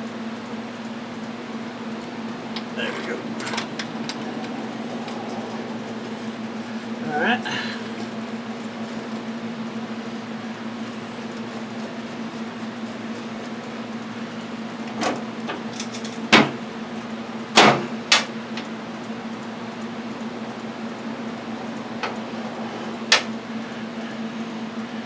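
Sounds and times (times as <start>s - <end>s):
steady low hum: 0.0s - 25.0s
hand tools knocking on metal: 2.0s - 7.0s.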